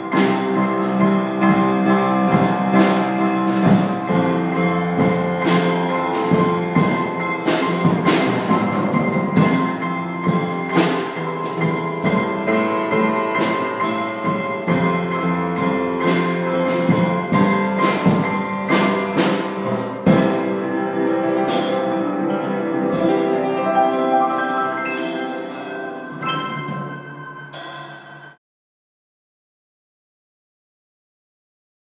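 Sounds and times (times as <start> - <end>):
drum and cymbal hits: 0.0 - 28.4
struck pitched notes ringing: 19.7 - 28.4.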